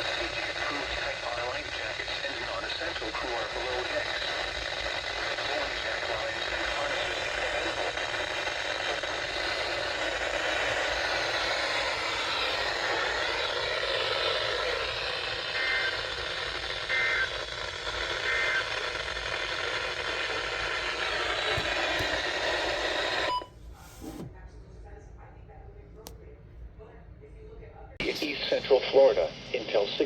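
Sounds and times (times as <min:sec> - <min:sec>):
radio static hiss: 0:00.0 - 0:24.3, 0:28.0 - 0:30.0
two-tone data bursts: 0:15.2 - 0:22.2.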